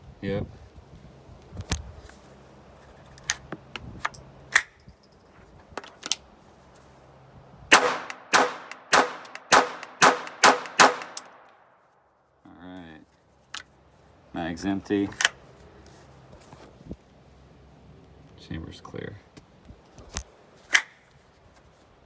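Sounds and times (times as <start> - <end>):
pistol shots: 7.7 - 11.5
sharp metallic clicks of gun action: 7.7 - 11.6, 20.1 - 21.0.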